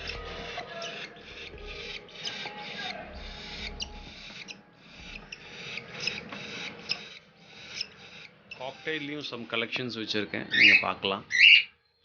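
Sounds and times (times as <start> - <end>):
sharp bird chirps: 0.0 - 9.5, 10.4 - 12.0
birds rasping calls: 0.0 - 11.8.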